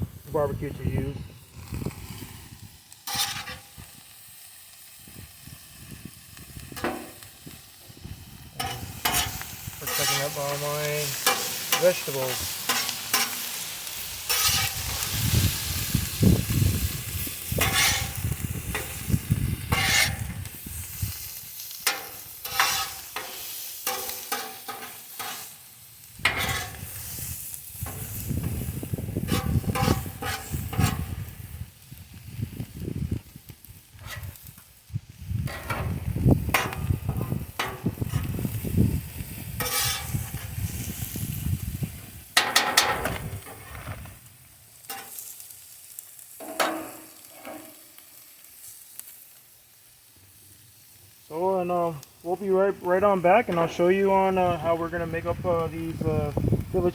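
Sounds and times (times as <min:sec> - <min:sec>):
meat and vegetables sizzling: 0:00.0 - 0:56.9
spatula scraping on griddle: 0:03.0 - 0:04.2, 0:06.7 - 0:07.2, 0:08.5 - 0:31.6, 0:33.8 - 0:34.7, 0:35.3 - 0:44.2, 0:44.8 - 0:49.2.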